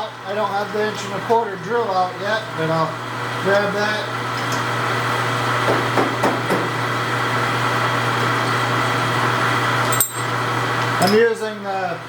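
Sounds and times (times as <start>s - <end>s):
machine hum: 0.0s - 11.0s
tools knocking: 5.6s - 6.7s.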